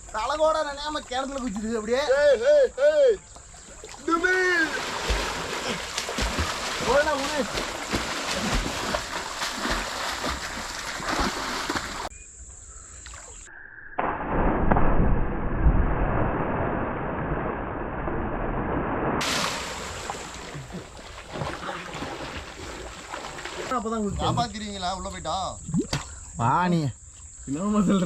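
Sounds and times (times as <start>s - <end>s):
water splashing: 0.0s - 2.3s, 3.1s - 12.1s, 19.2s - 26.3s
muffled underwater churning: 3.4s - 12.1s.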